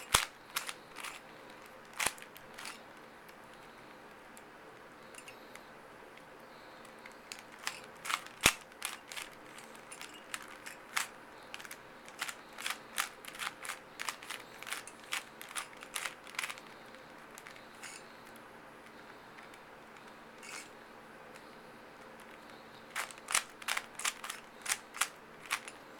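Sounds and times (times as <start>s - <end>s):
puzzle cube layers clicking: 0.0s - 2.8s, 7.0s - 18.0s, 22.2s - 25.7s.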